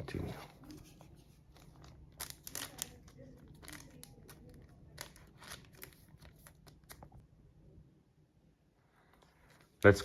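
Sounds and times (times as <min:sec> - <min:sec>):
trading card packaging crinkling: 0:00.7 - 0:07.1.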